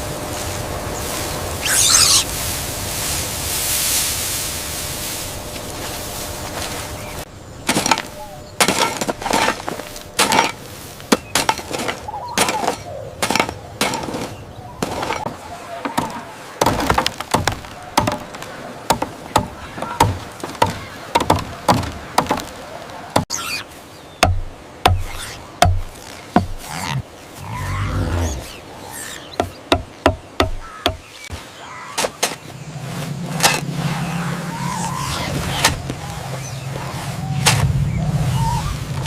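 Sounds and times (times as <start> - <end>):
sharp knocks and cracks: 7.7 - 22.6, 24.2 - 26.6.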